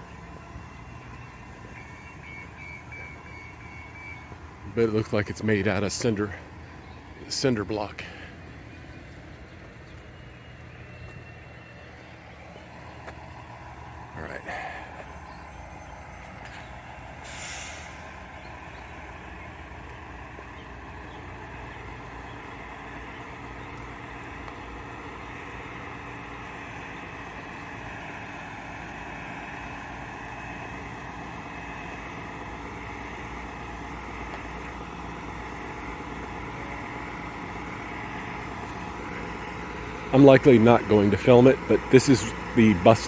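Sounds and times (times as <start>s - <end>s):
bus engine running: 0.0s - 43.0s
air hiss: 17.2s - 18.2s.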